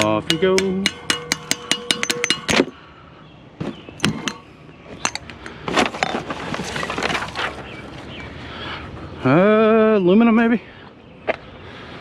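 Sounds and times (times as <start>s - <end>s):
objects knocking and clanking: 0.0s - 2.8s, 3.6s - 7.5s
rustling clatter: 5.0s - 8.1s.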